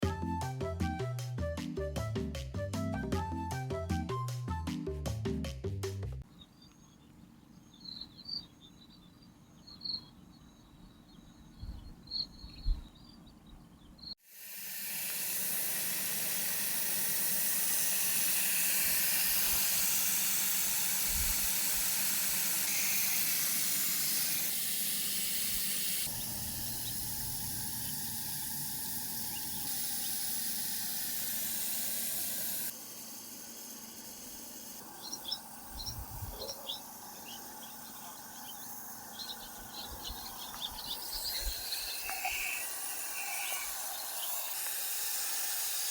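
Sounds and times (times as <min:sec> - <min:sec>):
faint high chirping: 0:06.3 - 0:14.2, 0:33.6 - 0:45.1
garden hose spraying water: 0:14.2 - 0:45.9.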